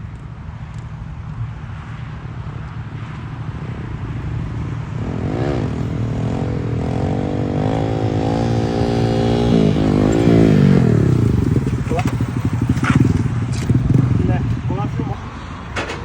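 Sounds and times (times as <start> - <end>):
truck diesel engine accelerating: 3.2 - 16.0.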